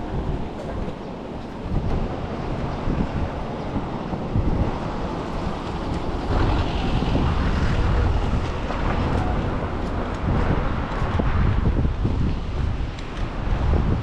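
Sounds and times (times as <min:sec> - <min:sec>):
wind rumble on microphone: 0:00.0 - 0:14.0
tyres hissing on wet road: 0:02.2 - 0:11.6
vehicle passing: 0:02.3 - 0:12.4.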